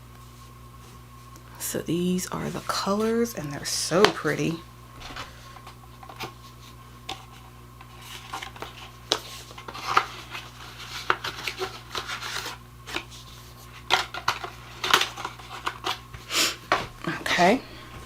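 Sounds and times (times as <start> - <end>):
faint steady hum: 0.0 - 18.0
packaging rustling: 5.0 - 16.2.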